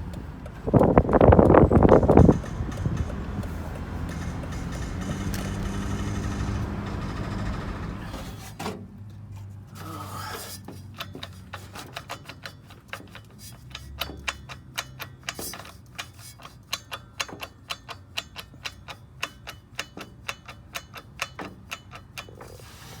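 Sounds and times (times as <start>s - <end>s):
rapid driveline clicking: 0.0s - 8.2s, 10.8s - 23.0s
engine and road drone: 0.0s - 9.9s.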